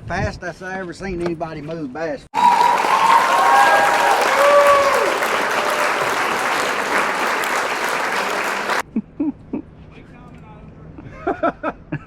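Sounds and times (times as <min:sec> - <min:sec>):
crowd applause and cheering: 0:02.3 - 0:08.8
crowd whooping: 0:02.3 - 0:08.8.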